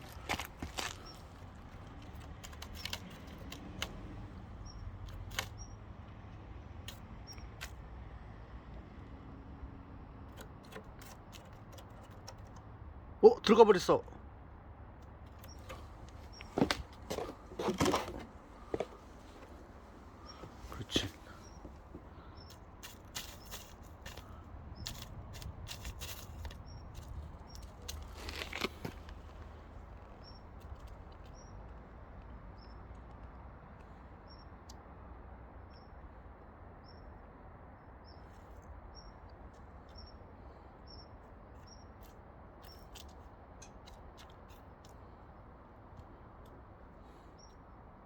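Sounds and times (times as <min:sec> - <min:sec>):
small bird chirping: 0:00.9 - 0:06.0, 0:06.8 - 0:07.8, 0:15.3 - 0:17.5, 0:18.6 - 0:31.7, 0:38.0 - 0:45.2
scattered clicks: 0:01.8 - 0:05.7.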